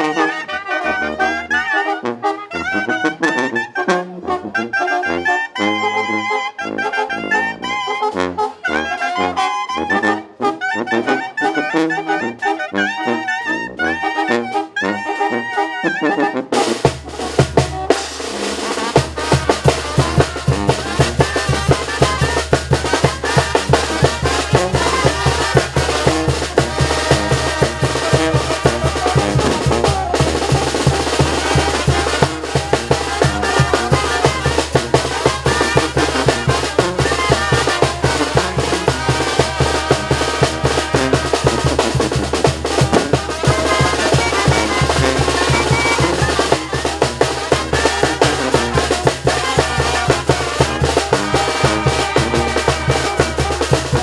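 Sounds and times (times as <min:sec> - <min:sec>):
brass band music: 0:00.0 - 0:54.0
snare drum: 0:16.6 - 0:54.0
bass drum: 0:16.8 - 0:54.0.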